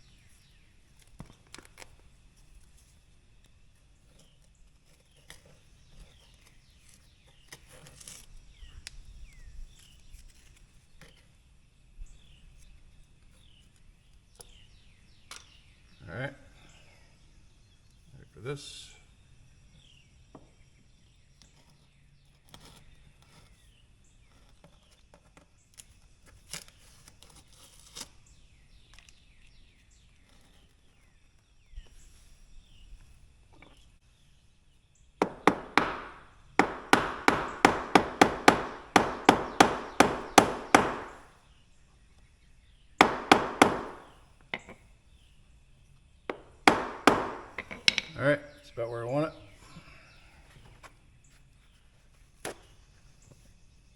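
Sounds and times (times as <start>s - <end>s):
hammer knocking on wood: 35.2s - 41.3s, 43.0s - 44.8s, 46.3s - 48.2s.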